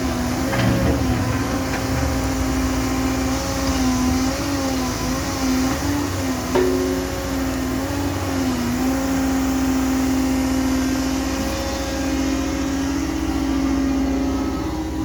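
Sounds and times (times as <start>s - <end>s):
excavator diesel engine running: 0.0s - 15.0s
sharp knock: 6.6s - 7.6s.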